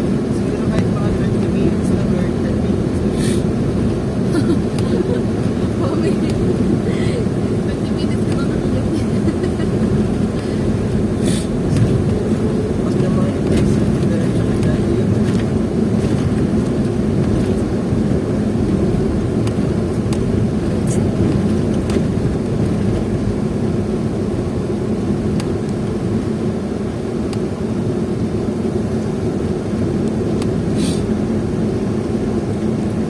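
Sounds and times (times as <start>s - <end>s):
vehicle engine drone and road noise: 0.0s - 33.0s
brief hiss: 30.8s - 31.0s.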